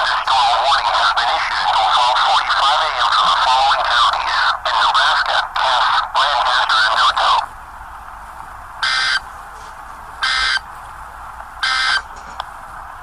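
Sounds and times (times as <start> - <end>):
digital modem data squawks: 0.0 - 7.5, 8.8 - 9.3, 10.2 - 10.7, 11.6 - 12.1.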